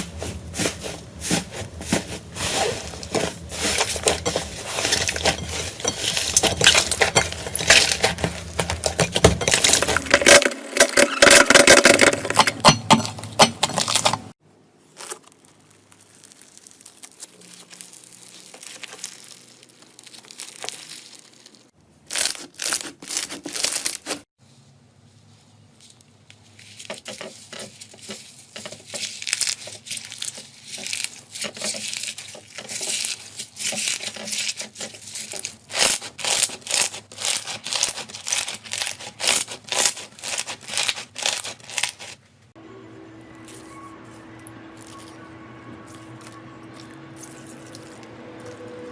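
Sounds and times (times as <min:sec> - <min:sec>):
slime squeezed and crackling: 0:14.9 - 0:24.2, 0:28.8 - 0:42.2.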